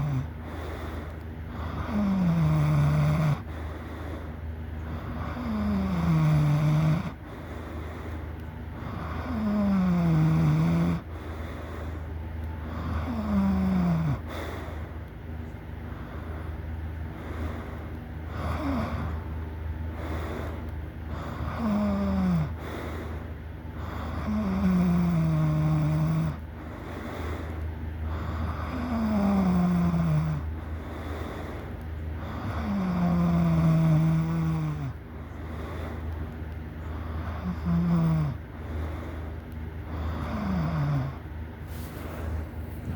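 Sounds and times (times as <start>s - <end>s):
person snoring loudly: 0.0s - 0.3s, 1.6s - 3.5s, 4.9s - 7.2s, 8.8s - 11.1s, 12.7s - 14.3s, 18.3s - 19.2s, 21.1s - 22.6s, 23.8s - 26.4s, 28.1s - 30.5s, 32.2s - 35.0s, 37.1s - 38.4s, 40.0s - 41.2s
steady low hum: 0.0s - 42.9s.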